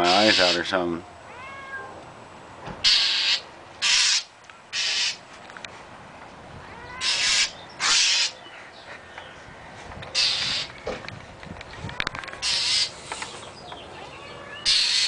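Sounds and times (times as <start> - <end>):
bird squawking harshly: 0.0 - 0.7, 2.8 - 5.2, 6.9 - 8.4, 10.1 - 10.8, 12.4 - 13.1, 14.6 - 15.0.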